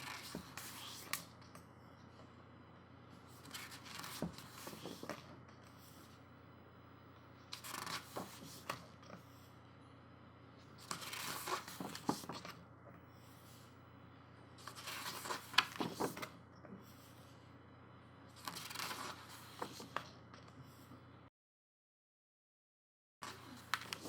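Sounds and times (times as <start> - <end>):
book pages turning: 0.0 - 1.3, 3.4 - 5.3, 7.5 - 9.2, 10.8 - 12.6, 14.6 - 16.4, 18.4 - 20.1, 23.3 - 24.0.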